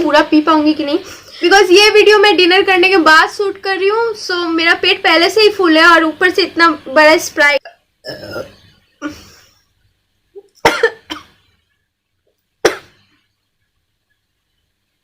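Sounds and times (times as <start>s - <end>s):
woman coughing: 10.6s - 11.4s, 12.6s - 13.0s.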